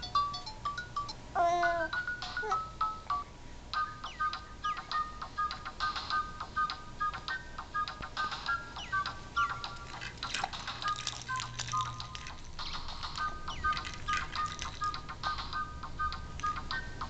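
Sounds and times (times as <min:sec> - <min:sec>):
electronic toy beeping tune: 0:03.8 - 0:09.9, 0:10.8 - 0:17.0
clicks and rattles: 0:09.7 - 0:15.1.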